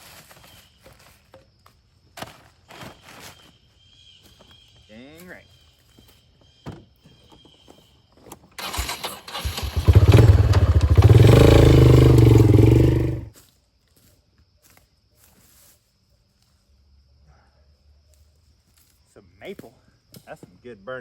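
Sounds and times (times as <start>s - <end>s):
engine cranking and running: 8.6s - 13.3s.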